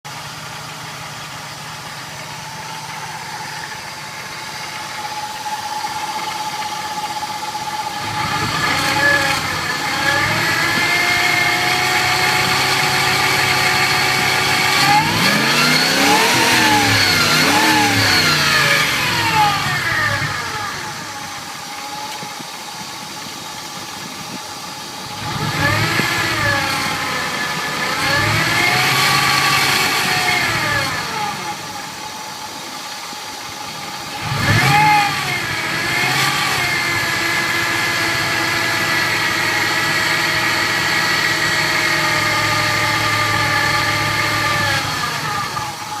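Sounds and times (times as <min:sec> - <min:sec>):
engine revving: 0:00.0 - 0:22.2, 0:25.0 - 0:32.0, 0:33.9 - 0:46.0
engine whine: 0:00.0 - 0:46.0.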